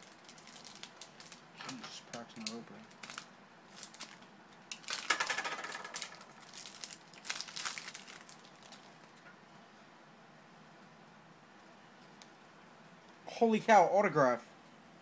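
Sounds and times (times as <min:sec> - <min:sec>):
wrapper crinkling and tearing: 0:00.0 - 0:09.2.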